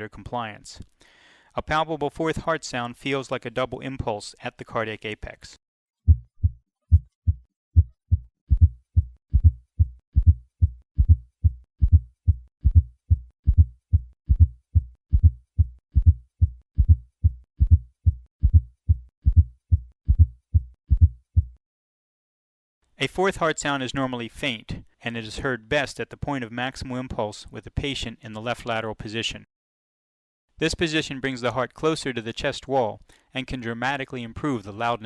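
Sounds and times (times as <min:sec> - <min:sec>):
heartbeat through a stethoscope: 0:06.1 - 0:21.6.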